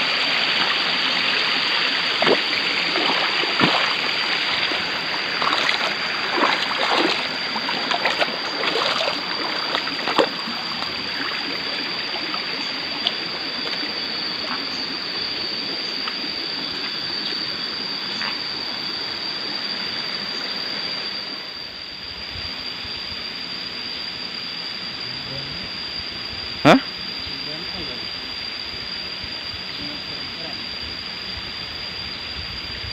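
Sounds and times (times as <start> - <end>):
river water running: 0.0 - 18.1
high-pitched whine: 0.0 - 32.9.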